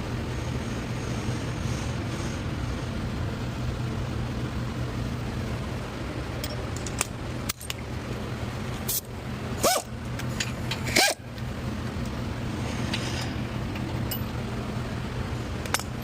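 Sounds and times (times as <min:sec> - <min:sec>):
low mechanical hum: 0:00.0 - 0:16.0
sharp metallic clicks: 0:06.4 - 0:07.9, 0:15.6 - 0:16.0.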